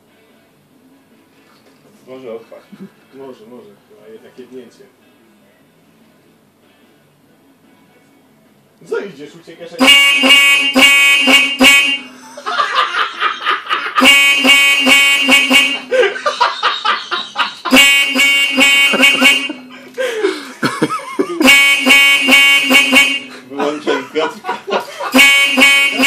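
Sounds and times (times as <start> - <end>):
shrill buzzer beeping: 9.8 - 12.2, 14.0 - 15.9, 17.7 - 19.7, 21.4 - 23.4, 25.1 - 26.0.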